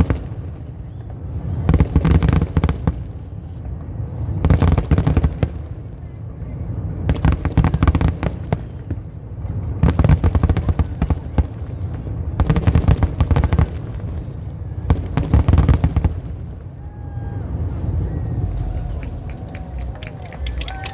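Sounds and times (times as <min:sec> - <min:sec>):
low rumble: 0:16.7 - 0:20.9
fireworks crackling and popping: 0:16.8 - 0:20.9.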